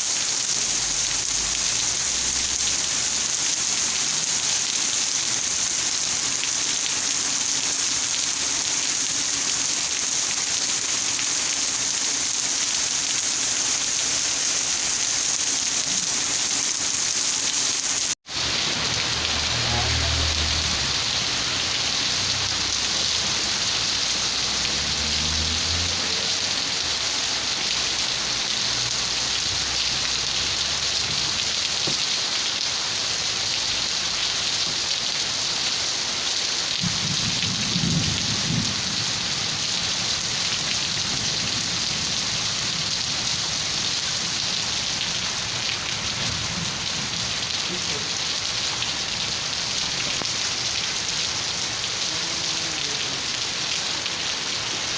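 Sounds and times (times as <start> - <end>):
steady rain: 0.0 - 54.9
thunder rumbling: 36.8 - 39.4.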